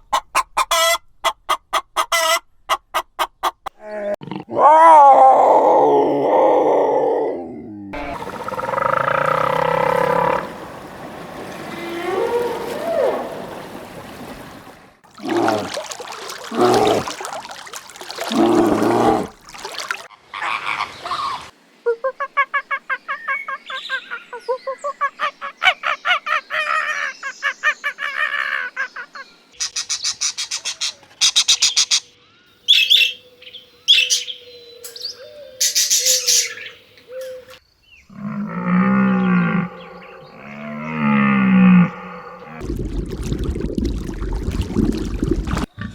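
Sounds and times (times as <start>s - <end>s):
gliding animal calls: 8.0s - 10.7s, 11.6s - 13.5s.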